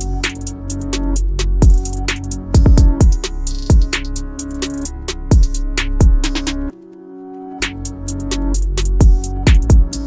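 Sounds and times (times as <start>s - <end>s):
hip-hop drum machine beat: 0.0s - 6.7s, 7.6s - 10.0s.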